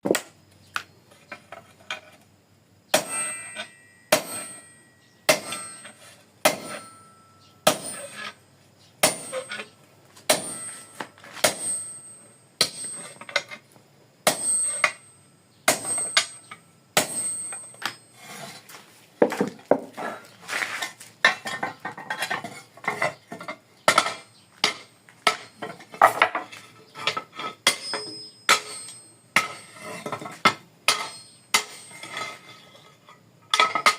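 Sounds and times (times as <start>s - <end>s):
ringing metal strikes: 2.9s - 8.1s, 10.3s - 13.1s, 14.3s - 18.1s, 27.6s - 29.8s, 30.9s - 31.9s.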